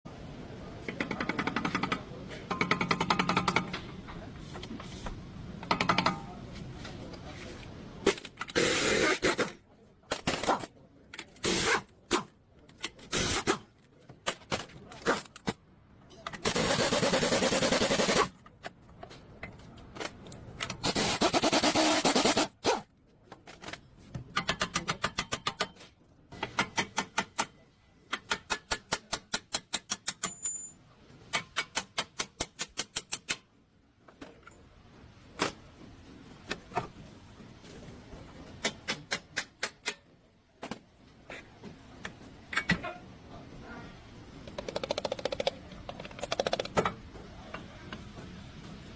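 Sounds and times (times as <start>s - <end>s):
loud rasping bursts: 16.5s - 18.3s, 20.8s - 22.8s.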